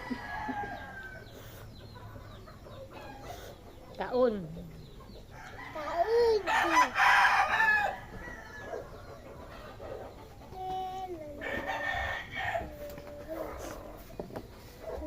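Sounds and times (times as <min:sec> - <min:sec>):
rooster crowing: 0:00.0 - 0:01.5, 0:05.3 - 0:09.0, 0:11.4 - 0:12.8.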